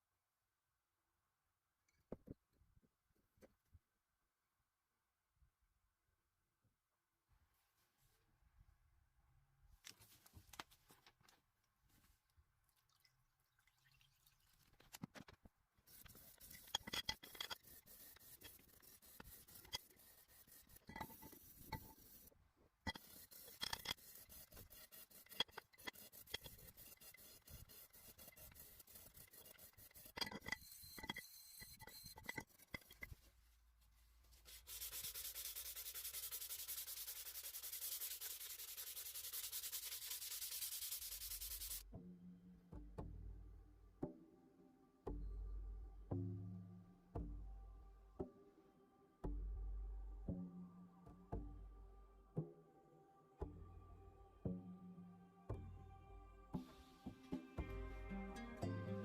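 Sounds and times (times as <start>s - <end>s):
hand rubbing and scraping: 14.8s - 41.8s.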